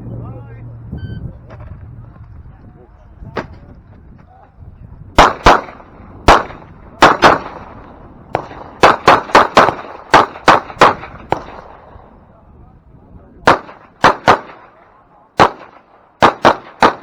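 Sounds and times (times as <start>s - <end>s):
pistol shots: 5.2s - 12.1s, 13.4s - 14.8s, 15.4s - 17.0s.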